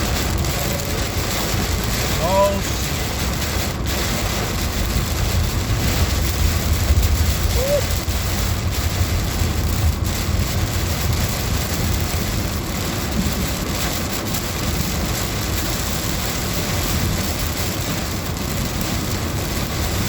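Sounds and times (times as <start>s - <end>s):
car road and engine noise: 0.0s - 20.0s
heavy rain on a car: 0.0s - 20.0s.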